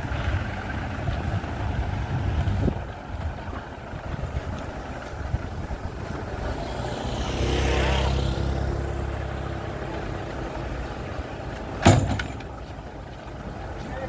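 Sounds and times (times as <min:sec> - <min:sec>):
motor vehicle passing: 0:00.0 - 0:14.0
sharp knock: 0:11.8 - 0:12.4.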